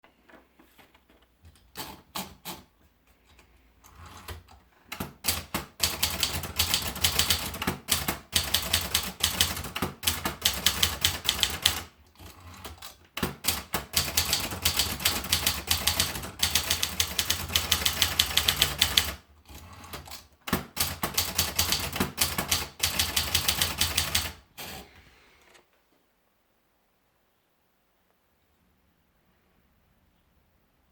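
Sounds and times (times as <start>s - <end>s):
typewriter keys clacking: 3.9s - 24.8s.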